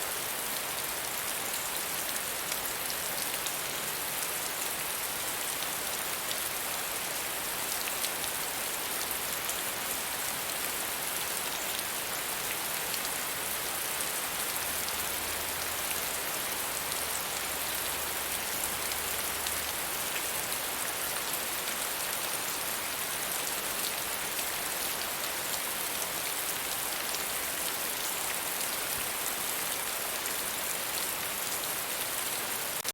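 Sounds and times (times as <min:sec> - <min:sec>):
steady rainfall: 0:00.0 - 0:32.9.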